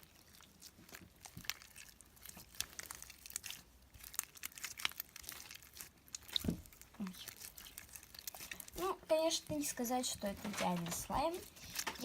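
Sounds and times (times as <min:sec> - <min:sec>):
slime squeezed by hand popping: 0:04.4 - 0:06.9.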